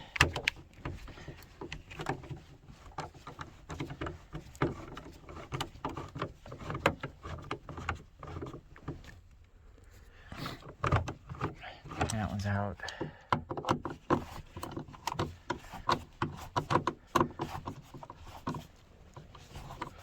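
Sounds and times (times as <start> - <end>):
screwdriver clicking and scraping: 13.2 - 20.0.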